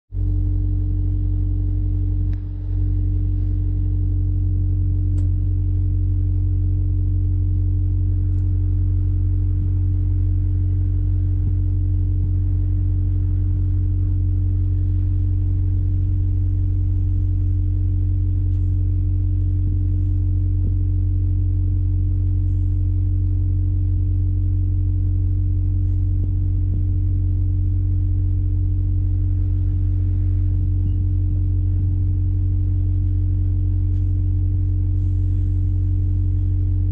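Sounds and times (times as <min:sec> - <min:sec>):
diesel engine droning: 0:08.2 - 0:36.9.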